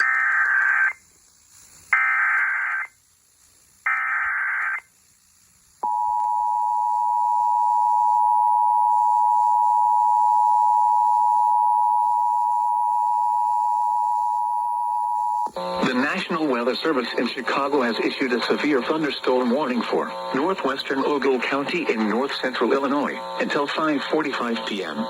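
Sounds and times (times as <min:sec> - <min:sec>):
buzzy digital data bursts: 0:00.0 - 0:06.0, 0:15.4 - 0:25.0
steady dual-tone alert signal: 0:01.9 - 0:03.0, 0:05.8 - 0:25.0.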